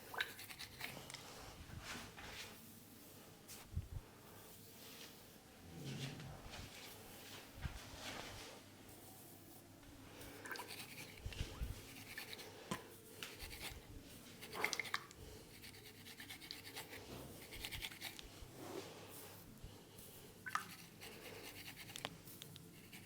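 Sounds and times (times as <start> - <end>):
fingers scratching through hair: 10.5 - 12.5, 13.2 - 18.3, 20.6 - 23.0.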